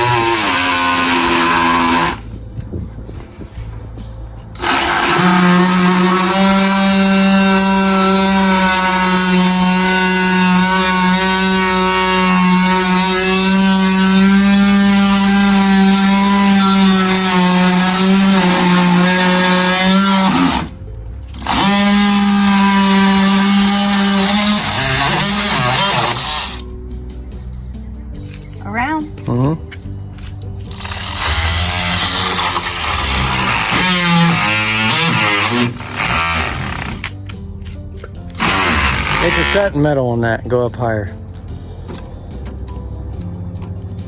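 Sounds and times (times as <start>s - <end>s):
oscillating multi-tool buzzing: 0.0s - 2.3s, 4.6s - 26.6s, 30.7s - 37.1s, 38.4s - 39.8s.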